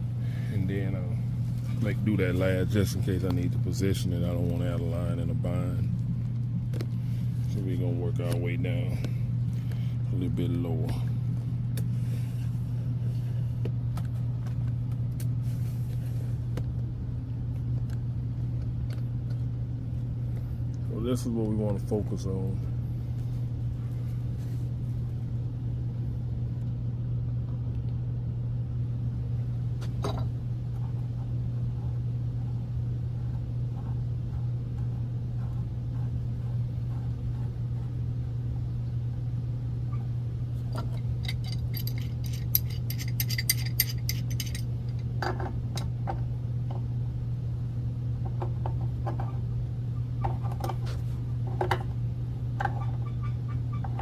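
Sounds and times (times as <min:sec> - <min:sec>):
steady low hum: 0:00.0 - 0:54.0
metal tools clicking and tapping: 0:40.8 - 0:45.4.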